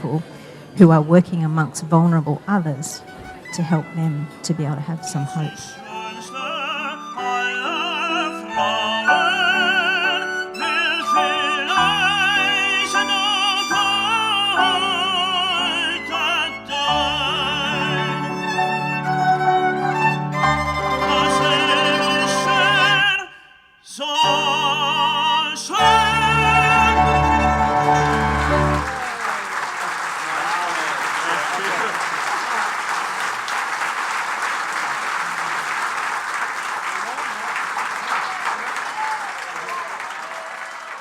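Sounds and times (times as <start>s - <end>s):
strings and piano: 0.3s - 23.2s, 24.0s - 29.2s
operatic singing: 2.0s - 29.2s.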